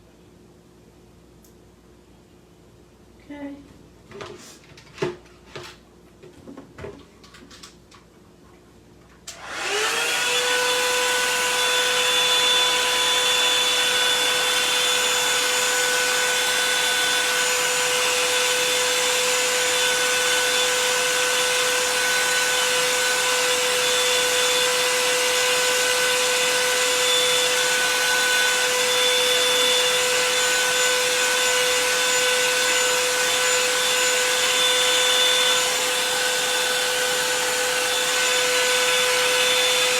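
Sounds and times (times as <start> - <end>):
hair dryer running: 9.3 - 39.9.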